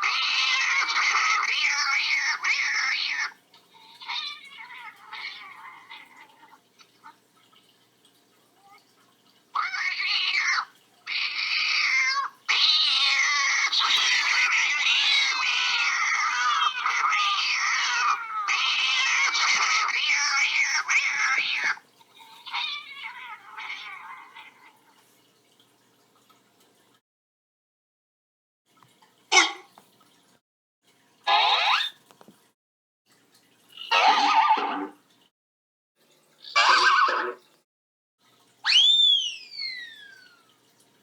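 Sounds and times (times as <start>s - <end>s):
cats yowling: 0.0s - 7.2s, 9.5s - 24.9s, 31.3s - 31.9s, 33.8s - 34.9s, 36.5s - 37.4s, 38.6s - 40.5s.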